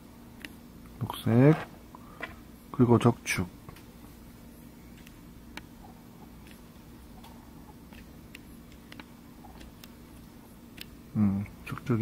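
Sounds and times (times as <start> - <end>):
low room hum: 0.0 - 12.0
keyboard switches clicking: 7.9 - 10.0.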